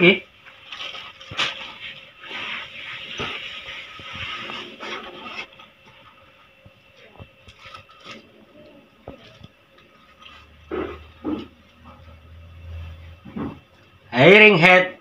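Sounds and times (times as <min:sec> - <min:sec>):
packaging rustling and scraping: 0:00.4 - 0:11.6.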